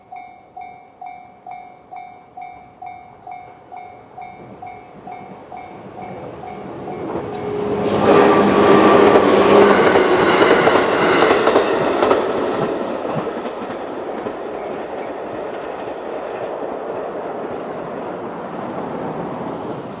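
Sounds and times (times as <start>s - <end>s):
level crossing warning bell: 0.0s - 10.0s
electric train rumbling past: 0.0s - 20.0s.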